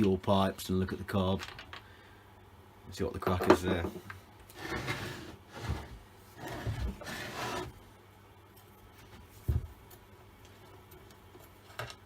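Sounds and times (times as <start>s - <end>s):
hands and tools scraping cover: 4.6s - 7.8s.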